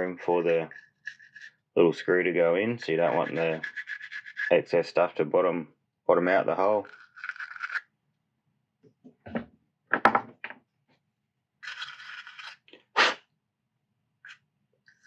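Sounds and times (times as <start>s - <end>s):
hand drill bit scraping: 0.5s - 1.6s, 3.0s - 4.6s, 6.8s - 7.9s, 11.6s - 12.6s.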